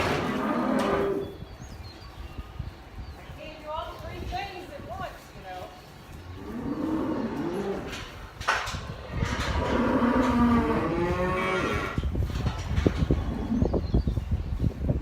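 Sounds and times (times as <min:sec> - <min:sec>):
cattle mooing: 0:00.0 - 0:01.3, 0:06.4 - 0:08.0, 0:09.3 - 0:12.0.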